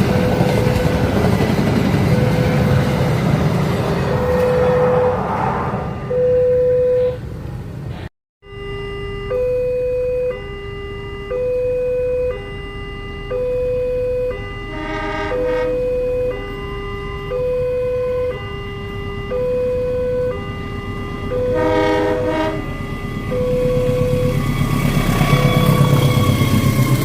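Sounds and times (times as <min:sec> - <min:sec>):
two-tone crossing alarm: 0:00.0 - 0:07.4, 0:08.4 - 0:27.0
low rumble of traffic: 0:00.0 - 0:27.0
short horn blast: 0:04.1 - 0:07.4, 0:14.7 - 0:15.9, 0:21.4 - 0:22.8.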